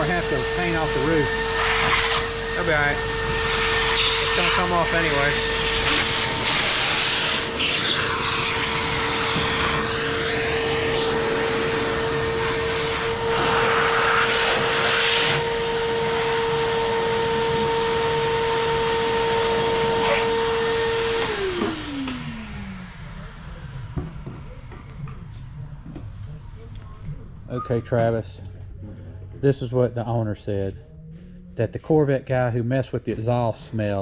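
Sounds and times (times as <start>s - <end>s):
motor whining: 0.0s - 24.0s.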